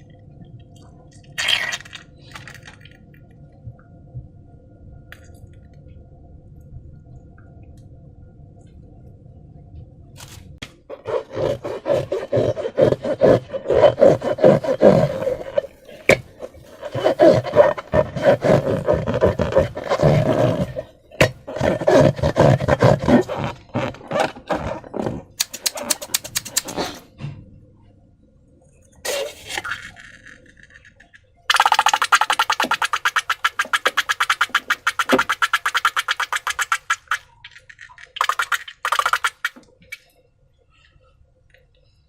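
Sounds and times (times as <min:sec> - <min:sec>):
slime and balloons squishing: 0:10.9 - 0:27.0, 0:31.5 - 0:37.3, 0:38.1 - 0:39.6.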